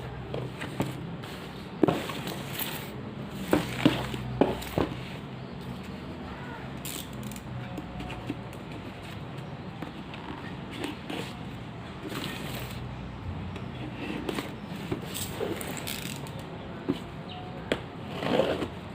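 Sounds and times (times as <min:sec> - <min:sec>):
packaging clicks and scrapes: 0:00.2 - 0:05.0, 0:10.0 - 0:12.8, 0:13.8 - 0:16.5.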